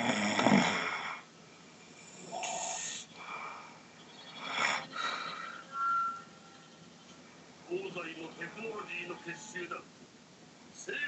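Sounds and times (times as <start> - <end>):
person snoring: 0.0 - 1.2, 2.0 - 3.8, 4.4 - 5.7.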